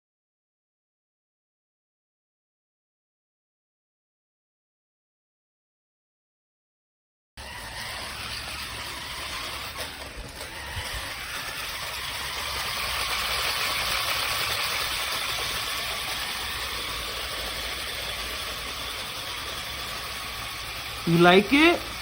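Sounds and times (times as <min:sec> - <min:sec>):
toy car motor whirring: 0:07.4 - 0:22.0.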